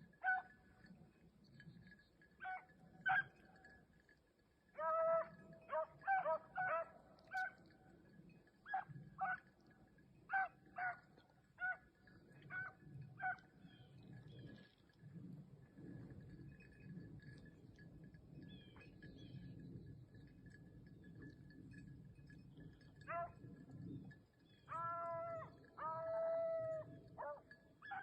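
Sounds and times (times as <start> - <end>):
dogs baying: 4.8 - 7.6, 10.3 - 11.0, 23.1 - 23.4, 24.7 - 28.0.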